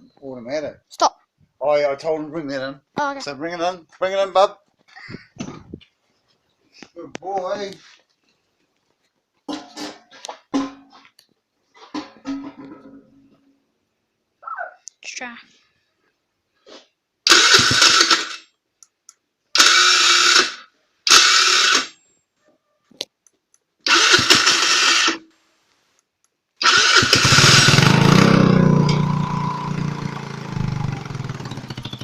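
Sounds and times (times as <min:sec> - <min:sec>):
electric starter cranking: 0:17.3 - 0:18.4, 0:19.6 - 0:22.0, 0:23.8 - 0:25.2, 0:26.6 - 0:32.0
small engine running: 0:17.3 - 0:18.4, 0:19.6 - 0:21.9, 0:23.9 - 0:25.2, 0:26.6 - 0:32.0.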